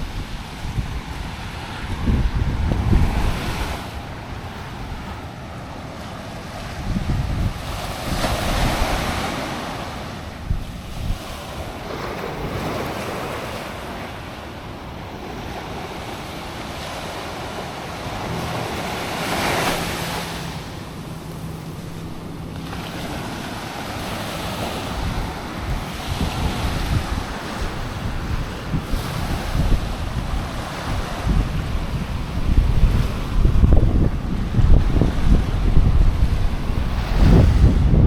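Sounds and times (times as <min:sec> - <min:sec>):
waves breaking on beach: 0:00.0 - 0:38.0
wind buffeting microphone: 0:00.0 - 0:38.0.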